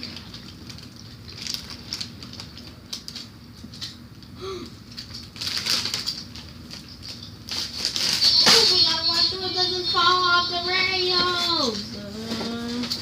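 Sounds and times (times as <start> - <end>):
toy train clicking and rattling: 4.9 - 13.0.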